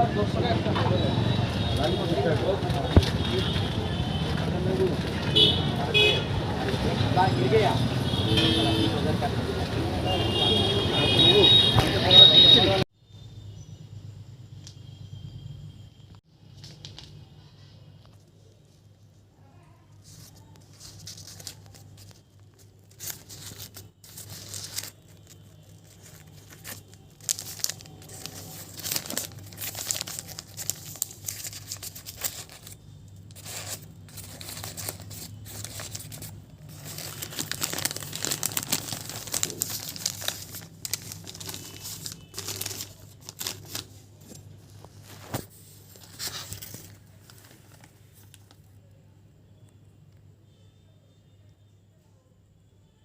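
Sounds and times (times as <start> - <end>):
crinkling and tearing handling noises: 19.9 - 48.8
sharp crackles: 20.2 - 43.9.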